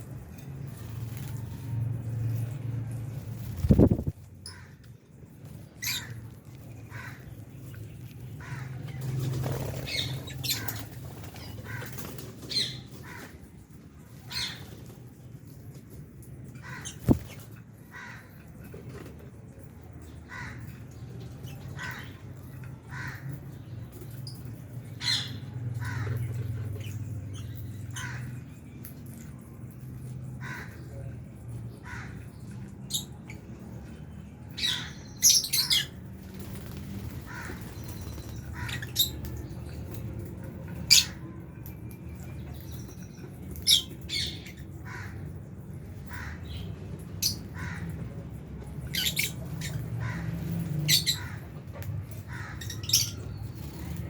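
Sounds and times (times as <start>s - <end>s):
lovebirds chirping and squawking: 0.4s - 15.2s, 16.2s - 54.0s.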